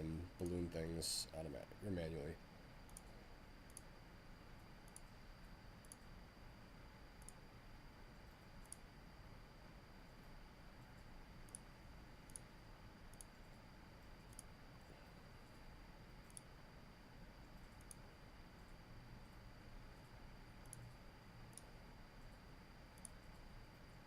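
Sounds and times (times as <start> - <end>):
thin steady whine: 0.0 - 24.0
computer mouse clicks: 2.8 - 3.9, 4.8 - 5.2, 5.8 - 6.1, 7.2 - 7.4, 8.6 - 8.9, 10.9 - 12.5, 13.1 - 13.6, 14.3 - 14.5, 16.2 - 16.5, 17.5 - 18.8, 19.9 - 24.0.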